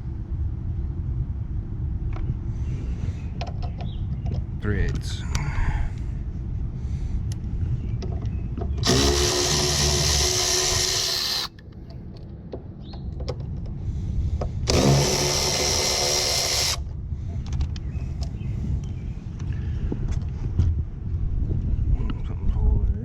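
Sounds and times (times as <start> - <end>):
power drill spinning: 8.8 - 11.5, 14.7 - 16.8.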